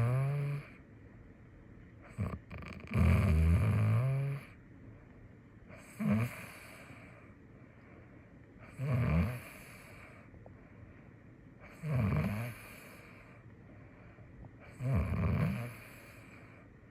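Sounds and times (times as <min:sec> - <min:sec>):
cat snoring: 0:00.0 - 0:00.8, 0:02.1 - 0:04.6, 0:05.7 - 0:07.2, 0:08.6 - 0:10.2, 0:11.6 - 0:13.4, 0:14.6 - 0:16.6.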